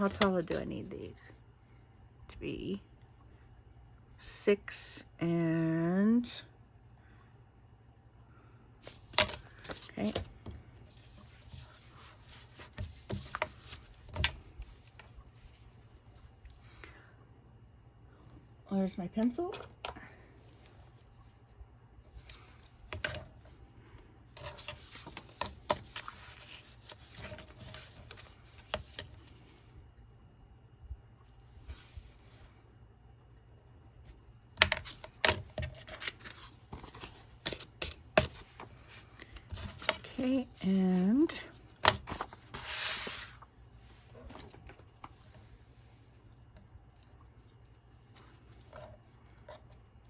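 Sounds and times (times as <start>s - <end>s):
paper and pencil tapping and rubbing: 11.0s - 15.6s, 24.4s - 29.2s
paper rustling: 24.4s - 29.5s, 34.6s - 40.6s, 41.5s - 43.5s.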